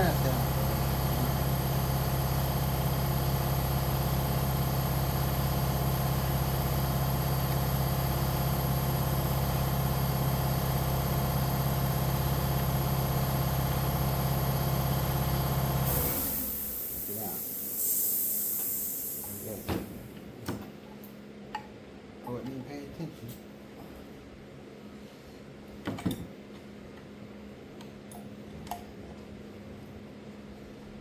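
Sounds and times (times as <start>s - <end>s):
motor humming: 0.0s - 19.9s.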